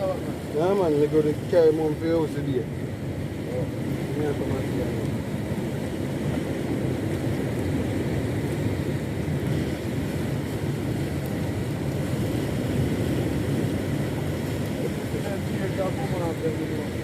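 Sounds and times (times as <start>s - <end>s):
boat engine droning: 0.0s - 17.0s.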